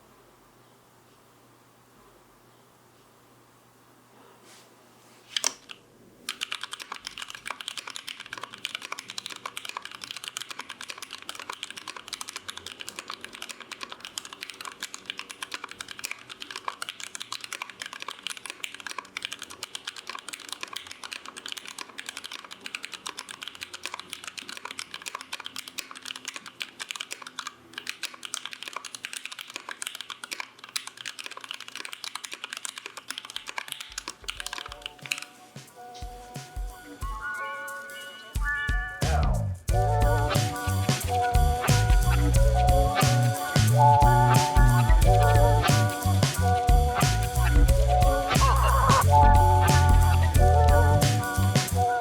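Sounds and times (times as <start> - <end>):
mechanical keyboard typing: 6.3 - 35.3.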